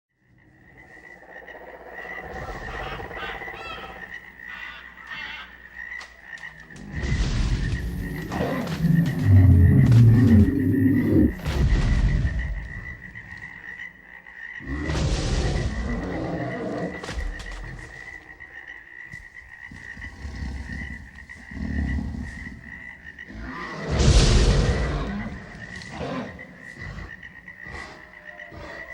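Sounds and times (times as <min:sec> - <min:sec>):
frogs croaking: 0:00.1 - 0:28.9
high insect drone: 0:00.2 - 0:11.5
chirping calls: 0:00.8 - 0:06.9, 0:07.6 - 0:11.4
loud deep rumble: 0:06.9 - 0:12.4.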